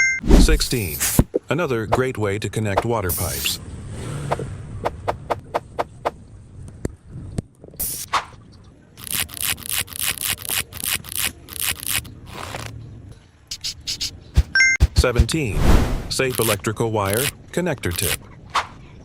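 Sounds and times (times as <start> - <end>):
quick scraping strokes: 13.5 - 18.2
tool clicks: 16.2 - 18.2.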